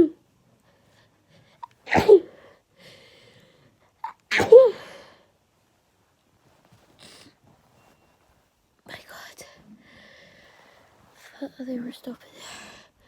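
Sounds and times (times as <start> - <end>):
woman sneezing: 1.6 - 2.4, 4.0 - 5.0
faint breathing: 2.3 - 4.0, 9.4 - 11.2.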